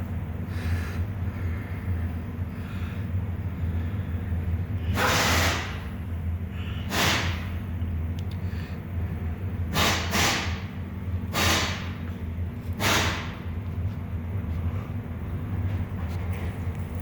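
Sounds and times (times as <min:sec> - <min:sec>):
low mechanical hum: 0:00.0 - 0:17.0
short hissing bursts: 0:06.8 - 0:07.4, 0:09.8 - 0:10.6, 0:11.3 - 0:11.8.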